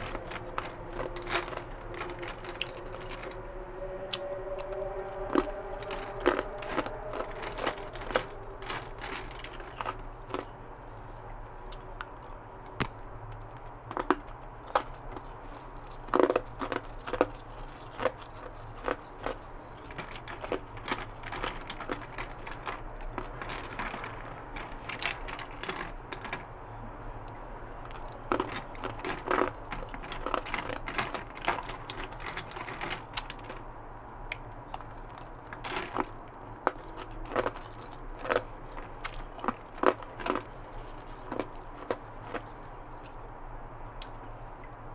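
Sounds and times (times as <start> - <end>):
person crunching ice cubes: 0.0 - 3.4, 5.1 - 10.6, 13.9 - 15.3, 15.9 - 26.4, 28.0 - 33.6, 35.5 - 42.6.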